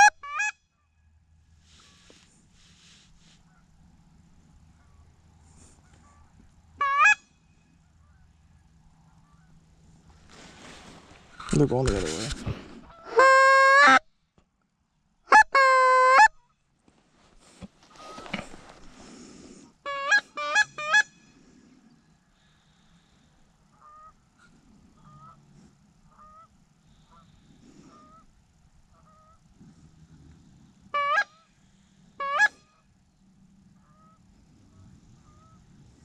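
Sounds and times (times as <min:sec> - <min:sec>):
distant geese honking: 0:04.6 - 0:09.8, 0:19.8 - 0:29.5, 0:30.9 - 0:32.9, 0:33.6 - 0:36.0
goose call honks: 0:06.8 - 0:07.3, 0:12.9 - 0:14.0, 0:15.3 - 0:16.3, 0:19.9 - 0:21.2, 0:30.9 - 0:31.5, 0:32.2 - 0:32.8.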